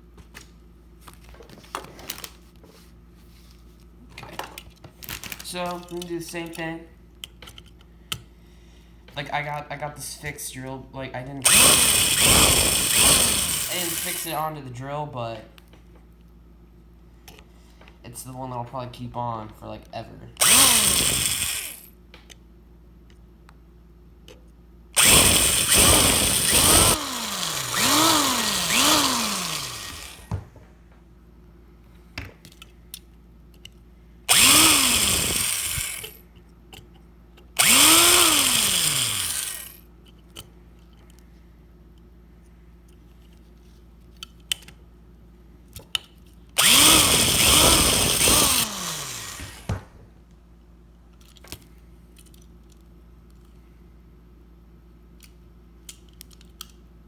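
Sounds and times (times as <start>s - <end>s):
cordless power drill whining: 11.4s - 14.4s, 20.4s - 21.9s, 25.0s - 30.5s, 34.3s - 36.2s, 37.6s - 39.8s, 46.6s - 50.0s.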